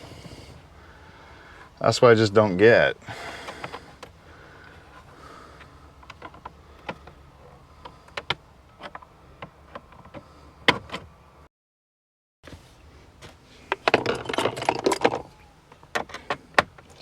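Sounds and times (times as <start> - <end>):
plastic trim panels clicking and knocking: 5.5 - 11.2, 13.7 - 17.0.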